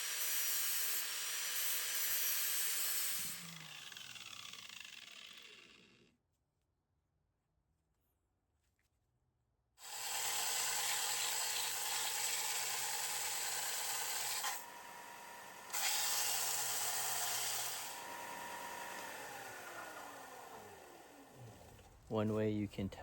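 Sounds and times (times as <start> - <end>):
grinder motor whine: 0.0 - 5.9, 9.8 - 21.7
grinder wheel cutting steel: 0.0 - 6.1, 9.8 - 21.7.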